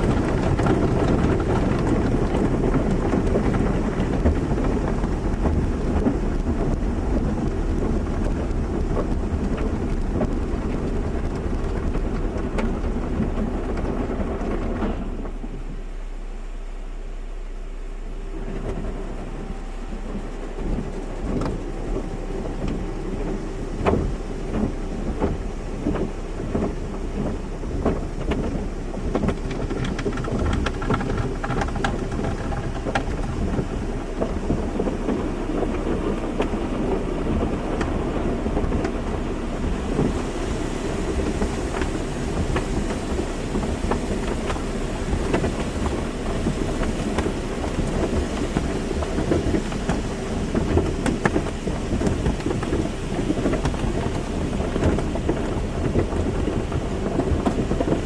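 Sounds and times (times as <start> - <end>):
steady low hum: 0.0 - 58.0
water spray drumming on car: 0.0 - 58.0.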